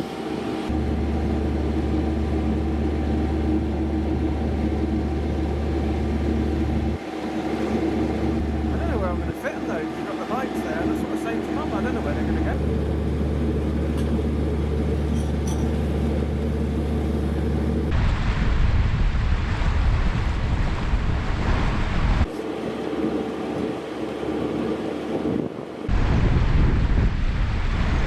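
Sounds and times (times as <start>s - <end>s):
boat engine humming: 0.0s - 26.2s
wind buffeting microphone: 17.0s - 28.0s.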